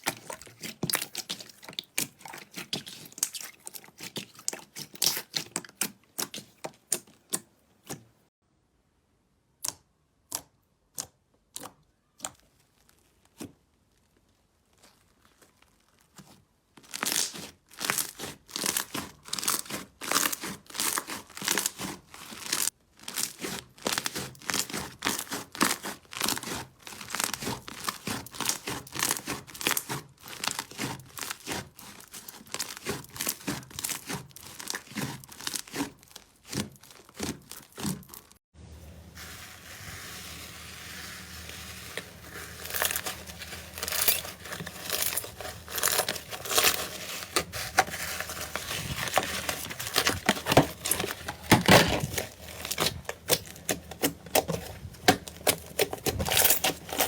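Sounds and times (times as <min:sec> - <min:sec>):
slime crackling and popping: 0:00.0 - 0:07.1, 0:16.8 - 0:38.4, 0:40.6 - 0:57.0.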